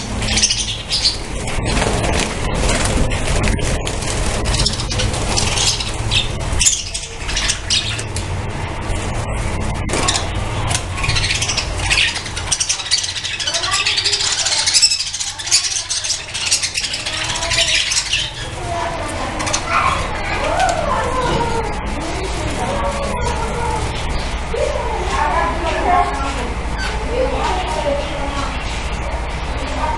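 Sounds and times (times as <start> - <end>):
budgerigars chattering and chirping: 0.0 - 8.3, 8.9 - 20.7, 26.1 - 27.1
low rumble: 0.0 - 12.5.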